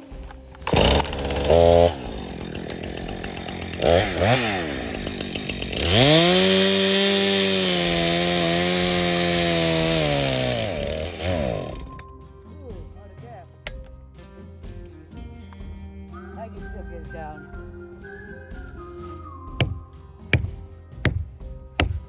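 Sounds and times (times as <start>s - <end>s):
chainsaw revving: 0.5s - 12.0s.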